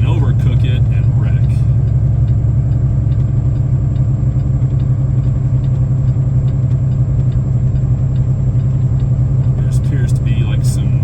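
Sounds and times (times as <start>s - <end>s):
truck engine droning: 0.0s - 11.0s
faint light ticks: 1.8s - 9.6s.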